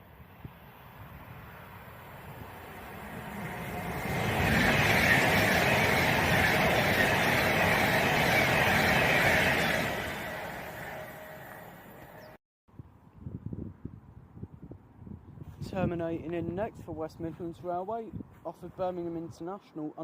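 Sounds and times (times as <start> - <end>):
electric train passing: 0.0 - 12.4.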